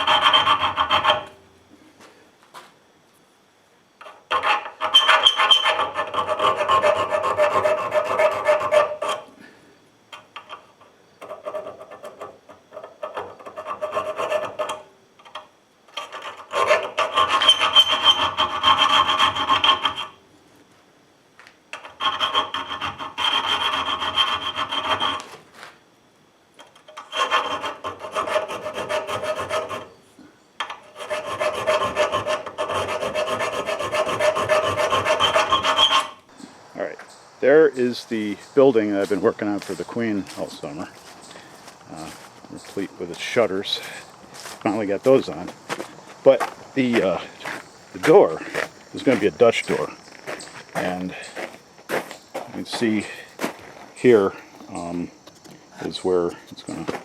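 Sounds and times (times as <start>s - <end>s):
file rasping on iron: 0.0s - 1.4s, 4.0s - 9.3s, 11.2s - 20.2s, 21.8s - 25.4s, 26.8s - 30.0s, 30.6s - 36.3s.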